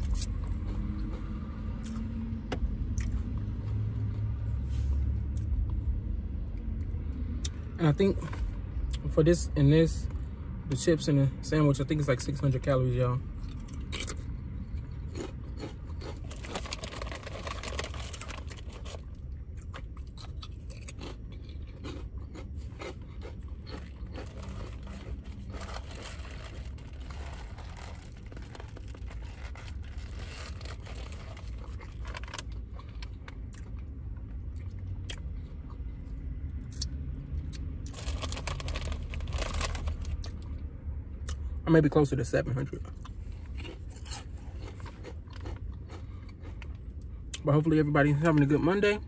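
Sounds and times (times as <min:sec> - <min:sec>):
chewing with crisp crunches: 0:00.0 - 0:02.2, 0:02.9 - 0:04.3, 0:13.4 - 0:40.6, 0:42.8 - 0:47.6
low steady hum: 0:00.0 - 0:49.0.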